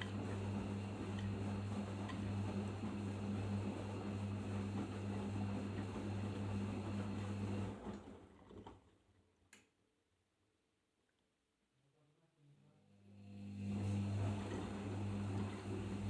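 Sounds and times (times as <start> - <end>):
washing machine humming: 0.0 - 8.7, 13.1 - 16.0.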